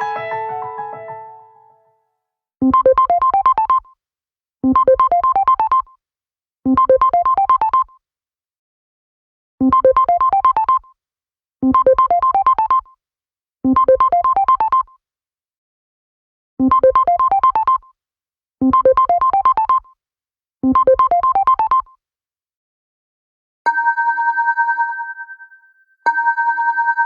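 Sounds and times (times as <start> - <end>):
phone ringtone with bright notes: 0.0 - 1.7.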